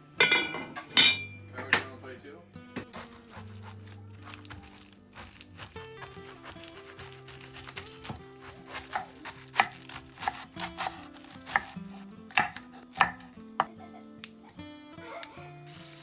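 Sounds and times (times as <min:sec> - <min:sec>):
soft background music: 0:00.0 - 0:16.0
knife chopping on cutting board: 0:02.8 - 0:14.4.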